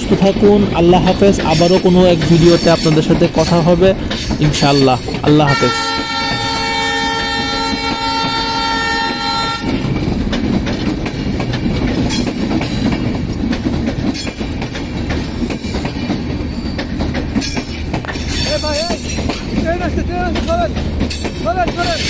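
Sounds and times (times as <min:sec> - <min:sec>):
train rumble and wheel clatter: 0:00.0 - 0:22.0
train horn: 0:05.5 - 0:09.8.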